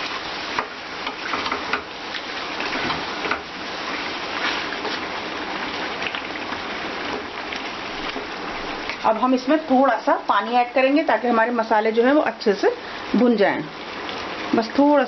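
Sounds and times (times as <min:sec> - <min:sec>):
food frying in oil: 0:00.0 - 0:15.0.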